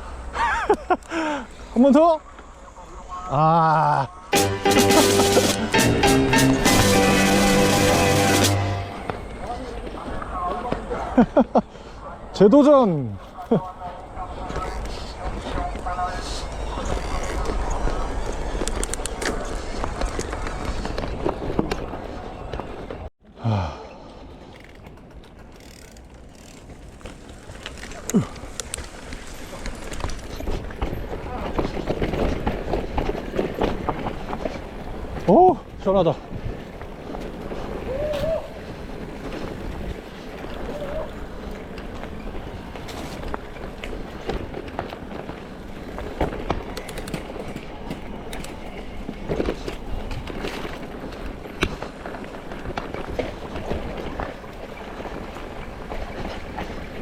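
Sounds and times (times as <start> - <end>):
bike tyres and wind rumbling: 7.0 - 57.0
bike clicks and rattles: 13.2 - 23.1, 24.0 - 57.0.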